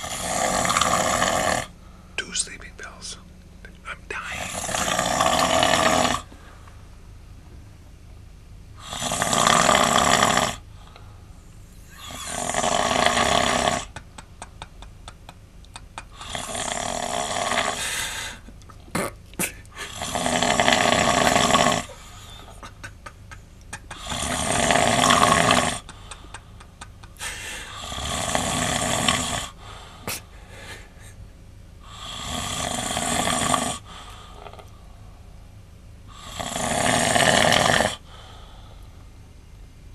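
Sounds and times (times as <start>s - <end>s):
man snoring: 0.0s - 1.8s, 4.1s - 6.3s, 8.8s - 10.7s, 11.8s - 14.0s, 15.8s - 18.4s, 19.0s - 22.6s, 23.8s - 31.2s, 31.8s - 34.6s, 36.1s - 38.8s.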